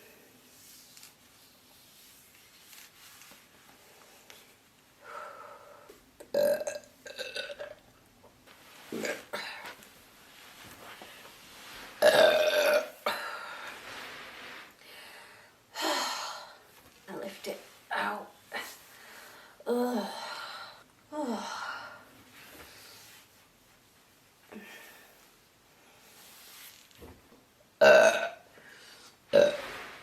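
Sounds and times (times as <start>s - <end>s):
woman burping: 6.3s - 7.8s, 12.0s - 13.2s, 27.8s - 28.4s, 29.3s - 29.6s.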